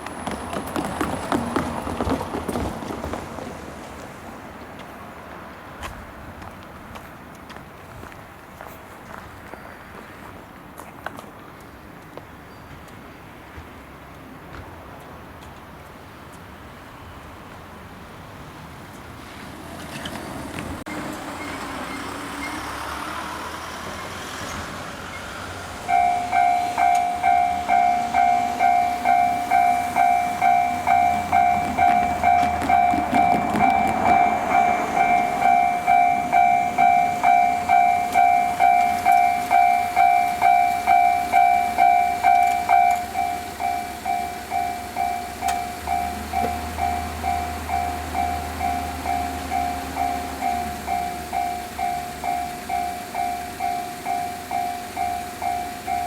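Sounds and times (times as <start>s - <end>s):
level crossing alarm clanging: 25.8s - 56.0s.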